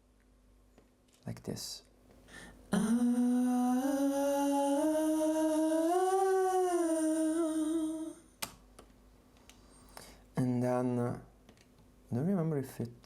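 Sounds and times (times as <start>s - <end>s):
person humming: 2.4s - 8.4s.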